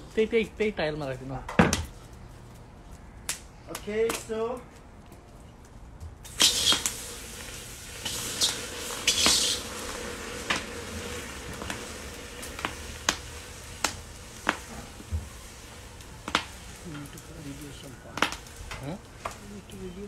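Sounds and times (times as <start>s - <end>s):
sharp oil pops: 6.2s - 9.8s, 10.4s - 10.7s, 11.5s - 15.3s, 16.2s - 16.7s, 18.1s - 19.4s
oil sizzling in a pan: 6.3s - 20.0s.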